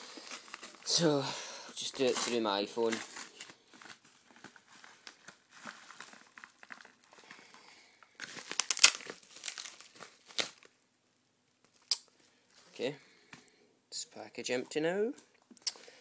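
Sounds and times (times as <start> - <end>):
packaging crinkling and rustling: 0.0 - 1.2, 1.8 - 10.8.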